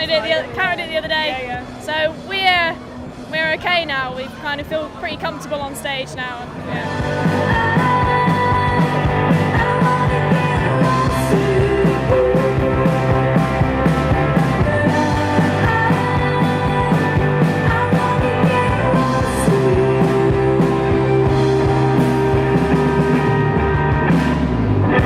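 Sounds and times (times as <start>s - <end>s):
rock music with drum beat: 6.4s - 25.0s.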